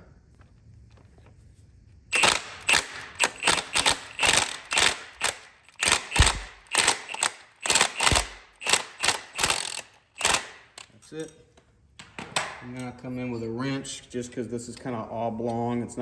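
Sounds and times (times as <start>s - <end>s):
heavy thuds: 5.9s - 6.8s.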